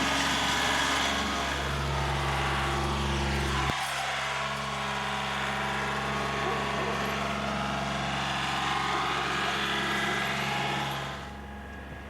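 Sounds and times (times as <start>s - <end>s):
tractor engine running: 0.0s - 12.0s.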